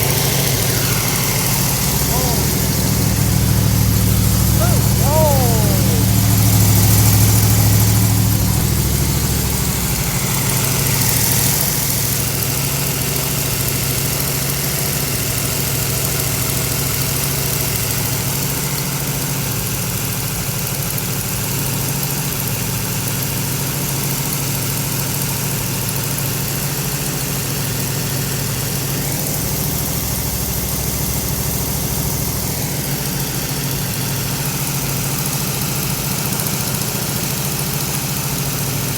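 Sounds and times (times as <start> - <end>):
car engine idling: 0.0 - 13.3.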